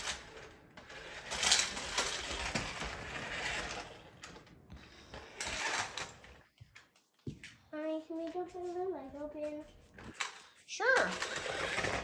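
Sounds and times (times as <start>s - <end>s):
plastic toys clattering: 0.0s - 4.4s, 10.0s - 12.0s.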